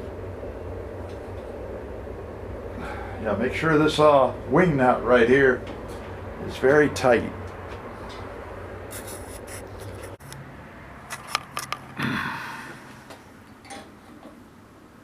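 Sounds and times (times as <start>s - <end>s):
metal scrape: 8.9s - 10.4s.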